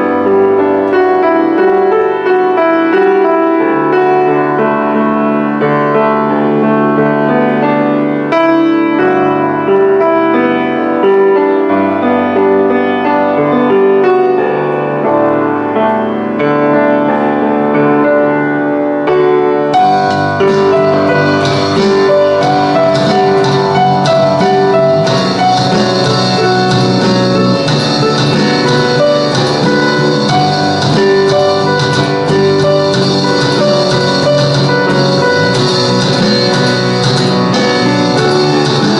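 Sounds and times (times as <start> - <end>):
piano melody: 0.0 - 38.9
bass line: 19.8 - 38.9
drum kit with cymbals: 19.8 - 38.9.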